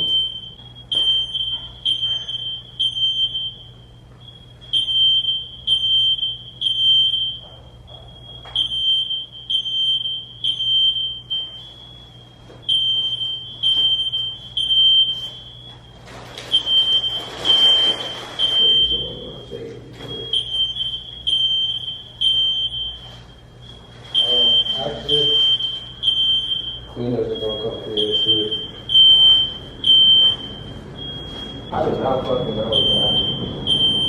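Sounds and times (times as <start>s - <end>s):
smoke alarm beeping: 0.0s - 34.0s
rustling handling noise: 15.0s - 18.8s.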